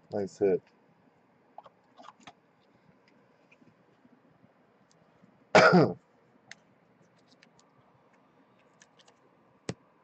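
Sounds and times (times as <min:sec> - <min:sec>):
man clearing his throat: 0:05.5 - 0:06.0.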